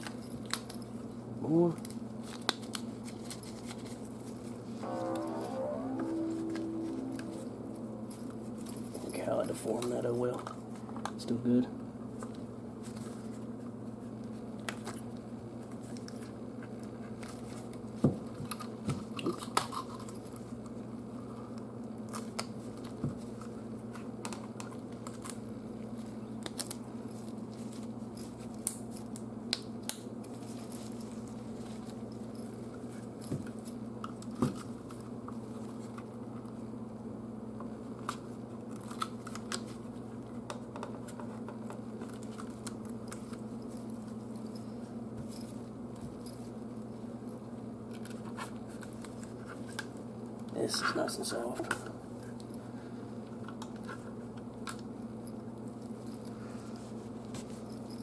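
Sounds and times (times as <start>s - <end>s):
low hum: 4.8s - 9.2s.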